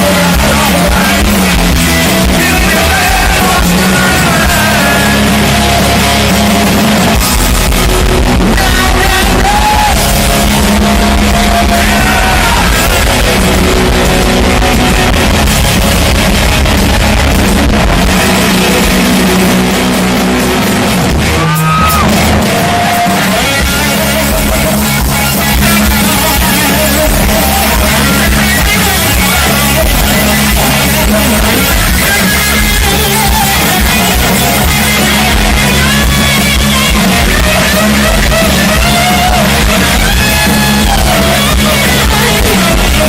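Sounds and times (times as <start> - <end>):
person singing: 0.0 - 6.0, 7.8 - 15.2, 21.3 - 43.0
live rock band with guitar: 0.0 - 43.0.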